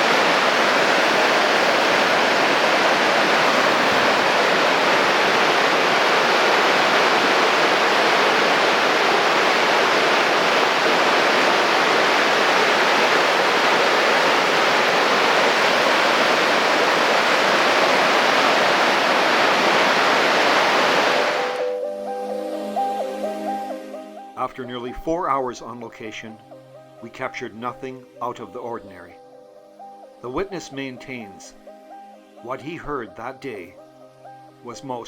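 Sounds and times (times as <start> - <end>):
creek water rushing: 0.0 - 21.8.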